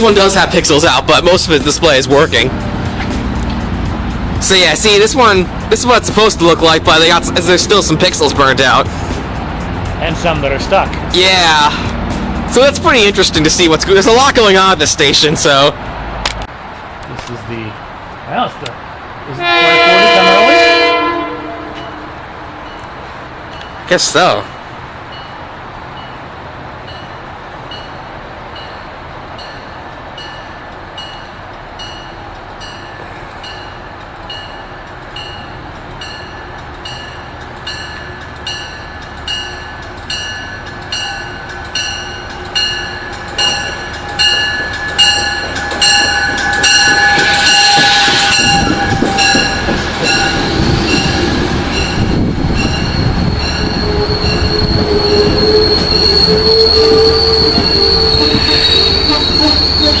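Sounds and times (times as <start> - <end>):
train rumble: 0.0 - 60.0
train warning bell ringing: 19.4 - 60.0
train wheels and brakes squealing: 28.6 - 60.0.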